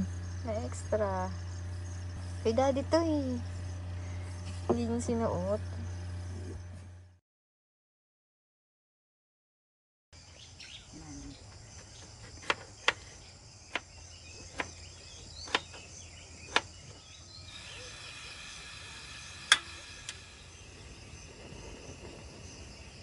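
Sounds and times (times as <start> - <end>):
crickets chirring: 0.0 - 6.8, 10.2 - 23.0
sharp clicks: 19.4 - 20.2.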